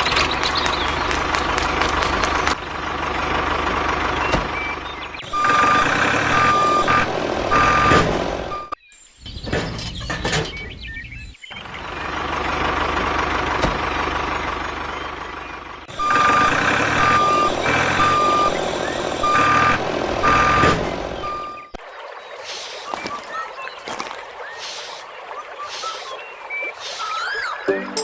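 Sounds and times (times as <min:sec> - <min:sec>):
truck engine running: 0:00.0 - 0:08.8, 0:10.0 - 0:21.8, 0:22.4 - 0:27.6
reversing alarm beeping: 0:05.2 - 0:08.8, 0:15.9 - 0:21.8.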